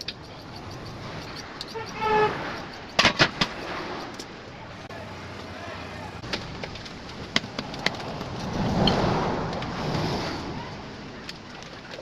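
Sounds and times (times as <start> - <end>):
vehicle passing by: 3.4 - 6.2, 7.7 - 11.1.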